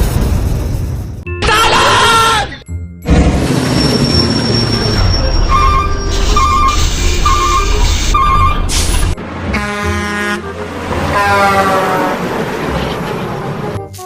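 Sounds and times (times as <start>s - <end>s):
heavy truck engine running: 3.0s - 14.0s
truck horn sliding down in pitch: 5.5s - 12.4s.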